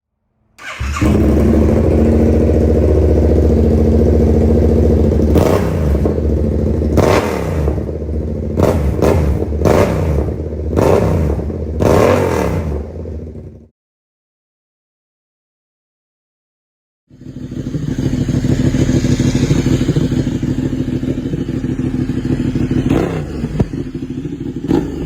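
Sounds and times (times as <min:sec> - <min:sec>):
motorcycle idling: 0:00.6 - 0:10.8, 0:12.9 - 0:13.6, 0:17.1 - 0:25.0
motorcycle throttle blips: 0:00.6 - 0:11.0, 0:17.5 - 0:25.0.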